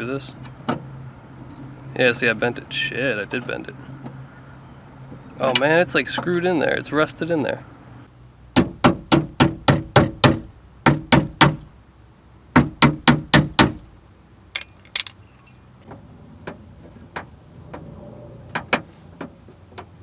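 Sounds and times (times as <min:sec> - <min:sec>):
sharp metallic knocks: 0:12.6 - 0:13.8, 0:14.6 - 0:15.7
high metallic jingle: 0:14.6 - 0:15.8.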